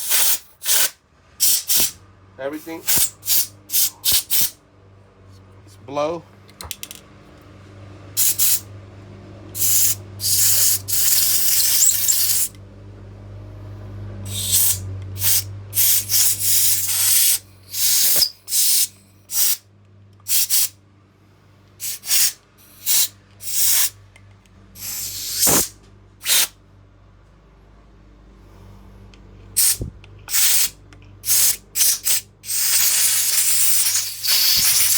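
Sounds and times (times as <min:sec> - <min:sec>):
compressed air blow gun hissing: 0:00.0 - 0:02.0, 0:02.7 - 0:04.6, 0:08.2 - 0:08.6, 0:09.6 - 0:12.5, 0:14.3 - 0:19.6, 0:20.3 - 0:20.7, 0:21.8 - 0:23.9, 0:24.8 - 0:26.5, 0:29.6 - 0:34.9
steady low hum: 0:00.0 - 0:34.9.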